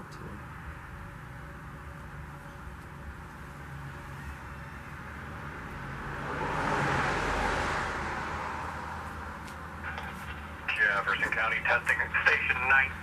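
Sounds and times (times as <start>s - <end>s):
car passing: 3.0s - 13.0s
steady low hum: 9.0s - 13.0s.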